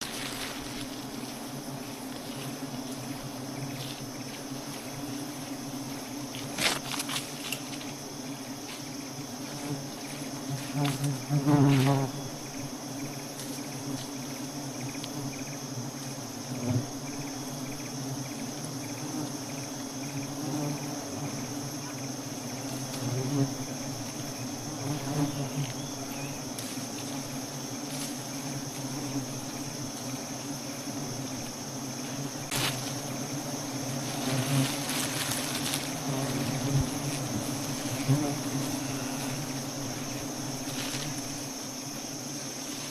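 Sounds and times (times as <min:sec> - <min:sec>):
high-pitched insect trill: 0:00.0 - 0:42.9
honeybees buzzing: 0:00.0 - 0:42.9.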